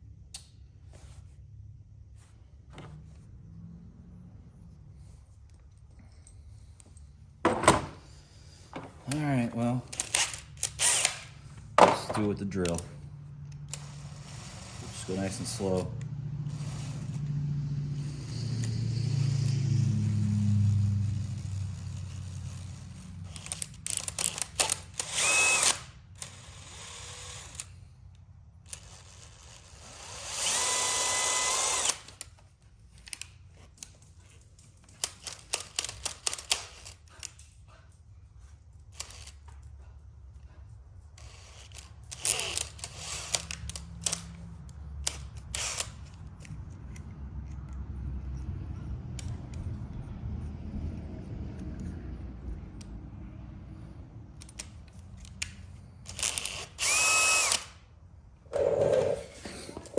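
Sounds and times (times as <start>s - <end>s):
power drill driving a tap: 7.5s - 8.1s, 8.7s - 12.9s, 23.4s - 27.8s, 28.7s - 32.3s, 56.2s - 57.7s, 58.6s - 59.9s
drill trigger clicks: 56.2s - 57.7s.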